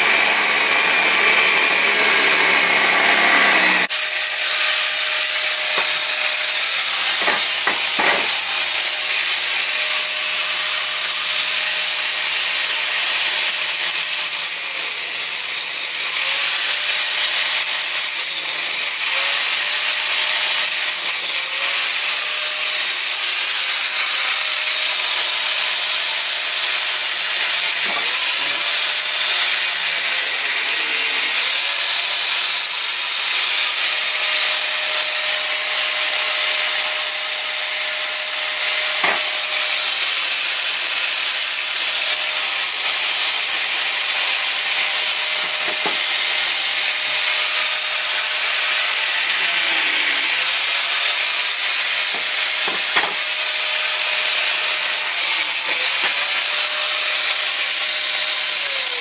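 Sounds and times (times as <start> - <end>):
angle grinder grinding steel: 0.0 - 59.0.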